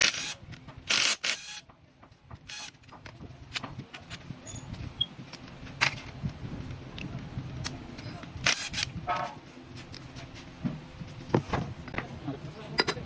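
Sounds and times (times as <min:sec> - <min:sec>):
mechanical clatter and scraping: 0:00.0 - 0:06.4.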